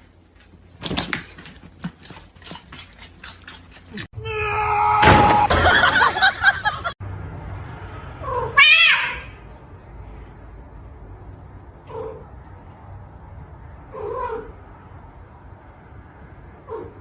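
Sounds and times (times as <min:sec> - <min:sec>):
cat meowing: 0:08.2 - 0:09.4.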